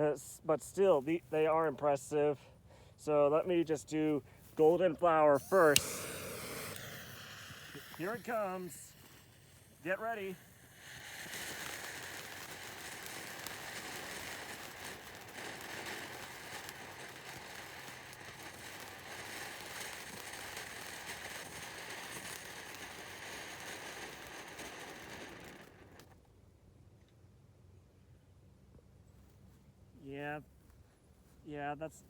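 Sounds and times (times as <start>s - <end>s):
firework hissing and crackling: 3.0s - 26.2s.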